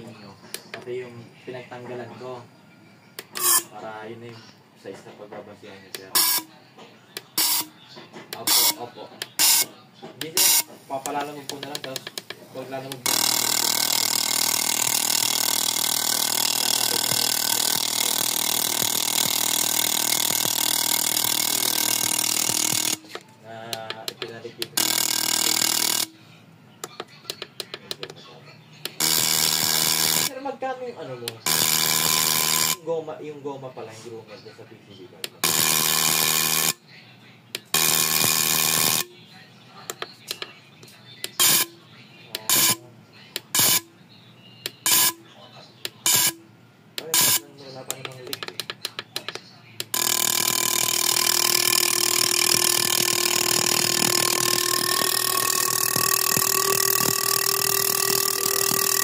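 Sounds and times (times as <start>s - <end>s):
injector buzzing: 3.2s - 3.8s, 6.0s - 6.6s, 7.2s - 7.8s, 8.4s - 23.2s, 23.8s - 26.2s, 28.9s - 30.4s, 31.3s - 32.9s, 35.4s - 36.8s, 37.6s - 39.2s, 41.3s - 41.8s, 42.4s - 42.8s, 43.4s - 43.9s, 44.7s - 45.3s, 46.0s - 48.4s, 49.8s - 59.0s
pump humming: 13.0s - 23.1s, 49.9s - 59.0s
faint ticking: 49.8s - 59.0s.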